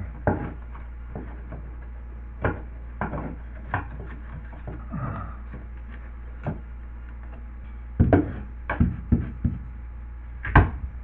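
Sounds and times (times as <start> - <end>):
steady low hum: 0.0 - 11.0
knocks of drywall piece: 8.0 - 9.7, 10.5 - 10.8.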